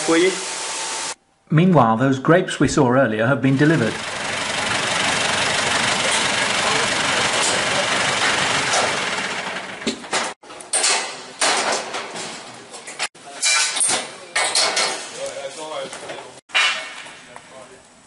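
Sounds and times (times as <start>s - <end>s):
vehicle engine running: 3.6s - 10.4s.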